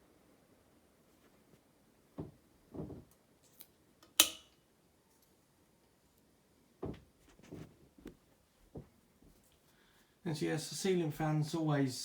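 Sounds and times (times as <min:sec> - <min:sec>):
dull knocks: 0:02.2 - 0:03.1, 0:06.8 - 0:07.6
ceiling fan switch click: 0:04.1 - 0:04.5.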